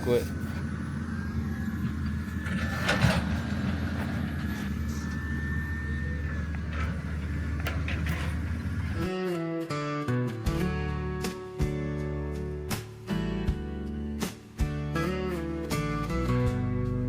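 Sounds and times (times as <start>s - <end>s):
acoustic guitar music: 0.0s - 9.1s
heavy equipment engine running: 0.0s - 9.1s.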